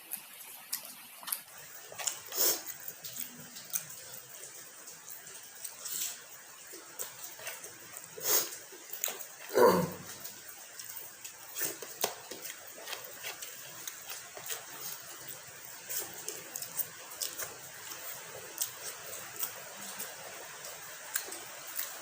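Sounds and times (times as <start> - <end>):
chewing with wet mouth clicks: 0.1 - 4.2, 8.8 - 22.0.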